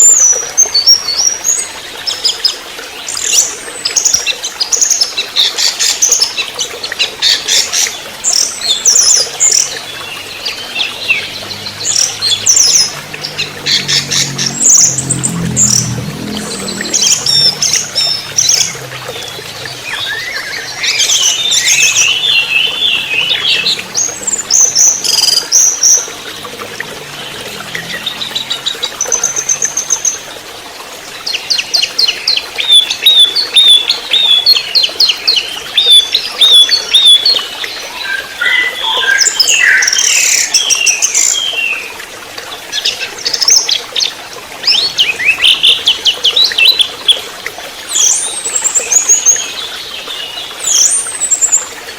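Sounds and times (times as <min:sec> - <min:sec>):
thrush singing: 0:09.4 - 0:30.5.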